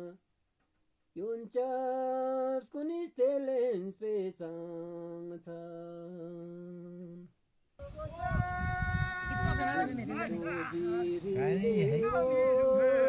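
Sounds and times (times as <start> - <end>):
person singing slow song: 1.2 - 8.2, 10.3 - 13.0.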